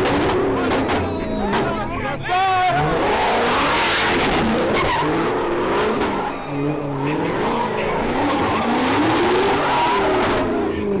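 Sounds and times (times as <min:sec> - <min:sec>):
car engines revving: 0:00.0 - 0:11.0
tyres squealing and skidding: 0:00.0 - 0:11.0
roar of tyre noise: 0:02.5 - 0:11.0.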